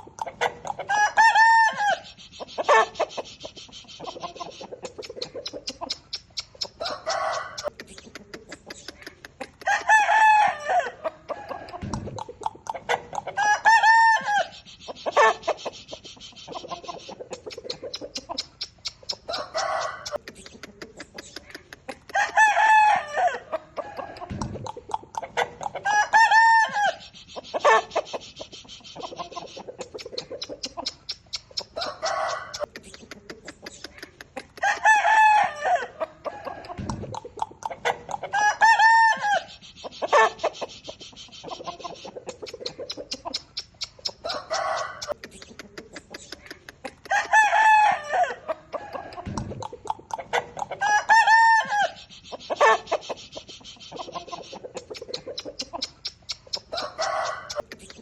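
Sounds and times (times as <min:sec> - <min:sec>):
chickens clucking: 0:00.0 - 0:58.0
roosters crowing: 0:00.6 - 0:02.1, 0:06.8 - 0:07.7, 0:09.6 - 0:11.8, 0:13.1 - 0:14.6, 0:19.3 - 0:20.2, 0:22.1 - 0:24.4, 0:25.4 - 0:27.0, 0:31.8 - 0:32.7, 0:34.6 - 0:36.8, 0:37.8 - 0:39.5, 0:44.2 - 0:45.2, 0:47.1 - 0:49.3, 0:50.3 - 0:52.0, 0:56.7 - 0:57.6.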